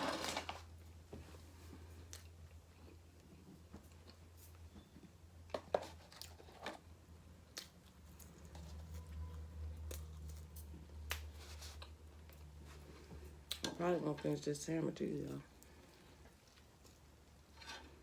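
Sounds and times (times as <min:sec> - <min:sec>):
chewing: 0:07.5 - 0:13.6.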